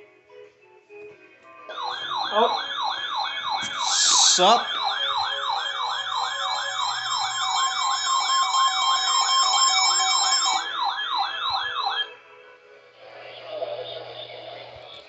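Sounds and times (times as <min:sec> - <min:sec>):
electronic siren yelping: 0:01.7 - 0:12.2
steady siren tone: 0:01.7 - 0:12.3.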